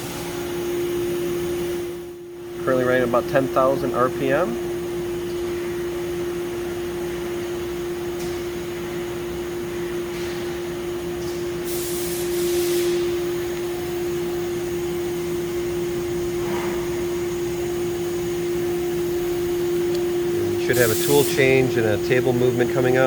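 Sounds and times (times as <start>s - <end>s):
machine spindle whine: 2.6s - 23.0s
burst of hissing: 11.7s - 13.2s, 20.6s - 21.7s.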